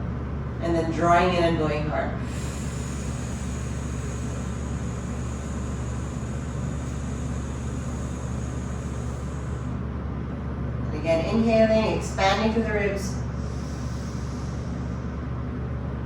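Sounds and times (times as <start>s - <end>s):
low background rumble: 0.0s - 16.0s
forceful breathy exhale: 2.2s - 10.0s, 13.1s - 15.7s.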